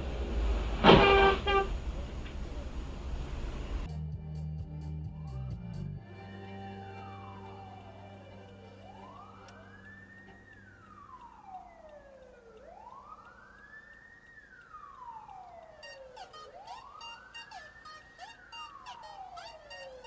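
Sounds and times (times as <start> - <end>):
siren wailing: 6.0 - 20.0.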